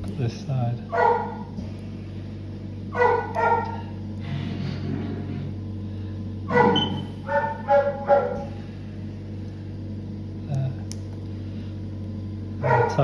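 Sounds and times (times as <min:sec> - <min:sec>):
low electrical hum: 0:00.0 - 0:13.0
dog barking: 0:00.9 - 0:01.6, 0:02.9 - 0:03.9, 0:06.5 - 0:08.6, 0:12.6 - 0:13.0.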